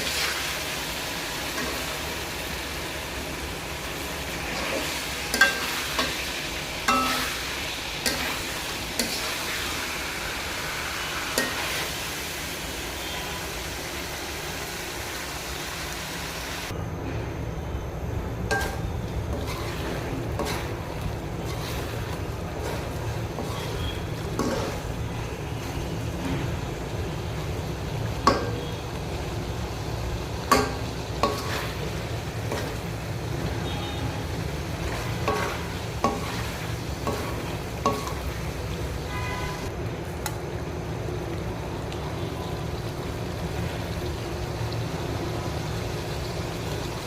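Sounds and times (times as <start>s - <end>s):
curry sizzling in a pan: 0.0s - 16.7s, 18.4s - 47.0s
spoon tapping against pan: 37.0s - 38.2s.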